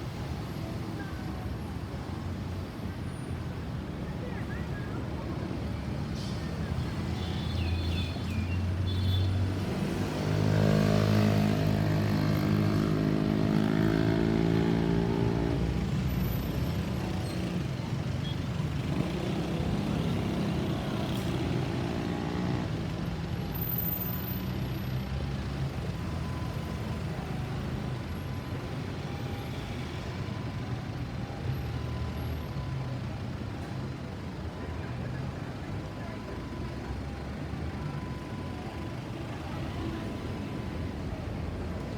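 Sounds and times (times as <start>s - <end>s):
road traffic passing: 5.0s - 41.9s.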